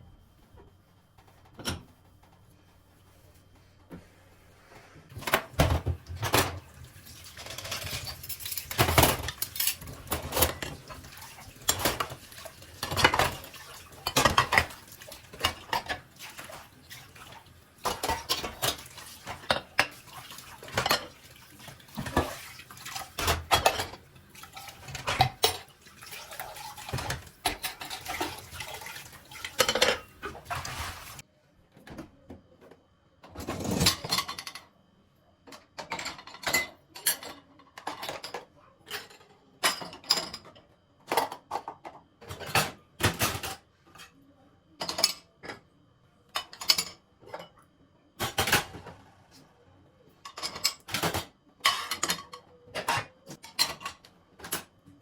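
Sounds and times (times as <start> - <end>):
dishes and cutlery clattering: 5.2 - 31.2, 33.3 - 34.7, 35.5 - 44.1, 44.8 - 45.6, 46.3 - 47.6, 50.2 - 54.7.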